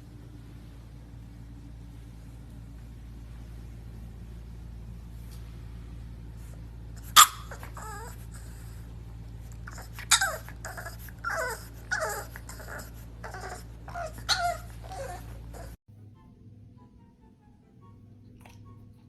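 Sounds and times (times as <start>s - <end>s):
puppy whimpering and yelping: 7.0s - 15.8s.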